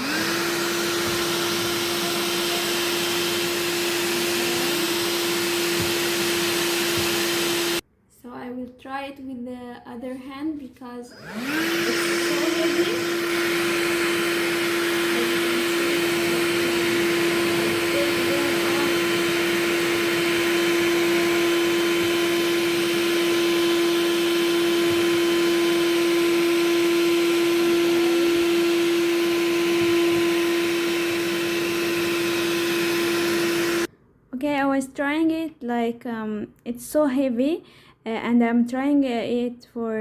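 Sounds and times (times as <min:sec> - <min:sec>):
vacuum cleaner running: 0:00.0 - 0:07.8, 0:11.1 - 0:33.9.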